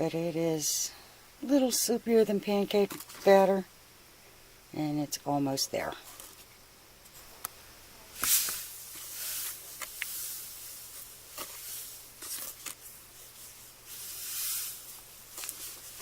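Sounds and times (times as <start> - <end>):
stick stirring gritty mix: 8.2 - 16.0.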